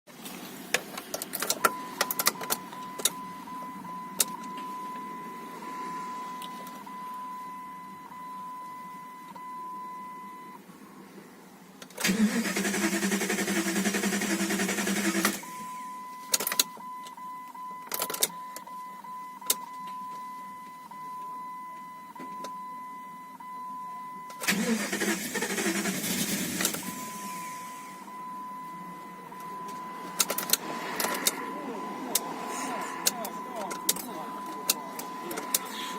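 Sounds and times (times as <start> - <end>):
car engine cranking: 0.2 - 4.7, 11.8 - 15.6, 16.2 - 17.2, 24.3 - 35.9
starter cranking engine: 12.0 - 15.4, 24.4 - 27.0
steady high tone: 26.9 - 35.9
clicks: 29.4 - 35.9.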